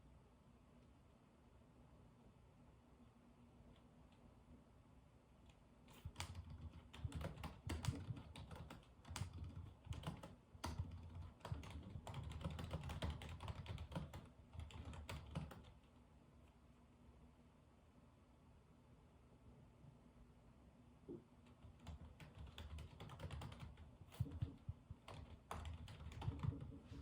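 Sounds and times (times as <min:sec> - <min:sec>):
typing on computer keyboard: 0:05.9 - 0:16.0, 0:21.5 - 0:26.8.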